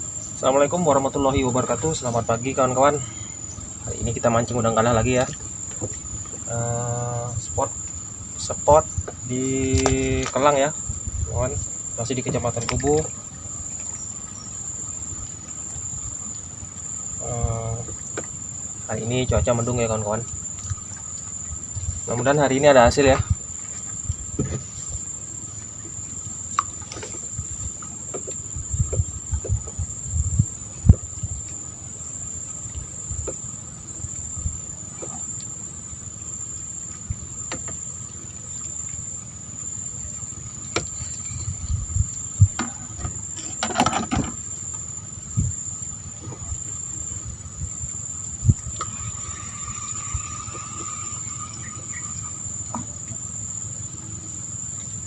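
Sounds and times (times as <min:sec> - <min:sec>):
insects shrilling: 0:00.0 - 0:55.0
low buzz: 0:00.0 - 0:55.0
low thumps and knocks: 0:08.7 - 0:13.2, 0:22.9 - 0:25.1, 0:25.8 - 0:31.6, 0:40.7 - 0:45.6.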